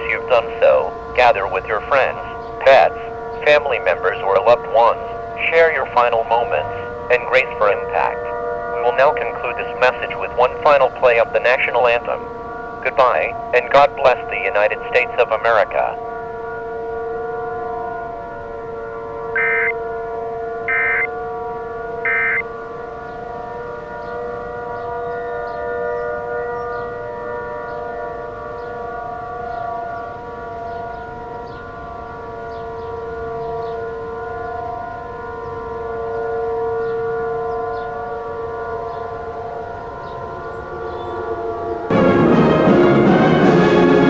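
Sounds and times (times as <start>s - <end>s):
civil defense siren: 0.0s - 44.0s
short electronic data bursts: 19.4s - 19.8s, 20.7s - 21.1s, 22.1s - 22.4s.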